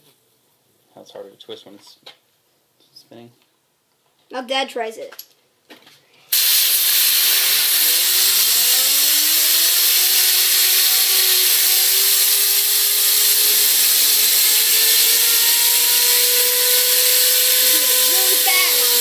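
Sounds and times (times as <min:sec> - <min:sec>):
compressed air hissing: 0:06.3 - 0:19.0
fidget spinner whining: 0:06.4 - 0:19.0.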